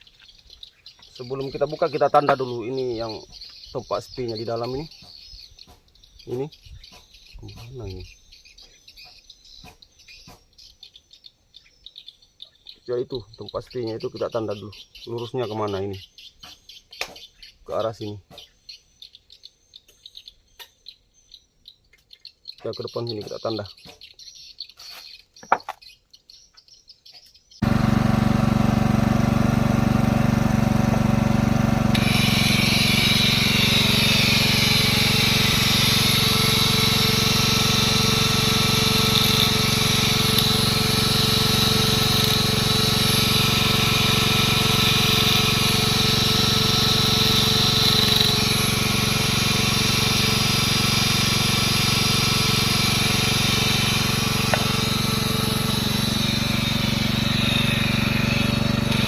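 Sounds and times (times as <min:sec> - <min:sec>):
angle grinder running: 0:27.6 - 0:59.0
grinder disc cutting metal: 0:27.6 - 0:59.0.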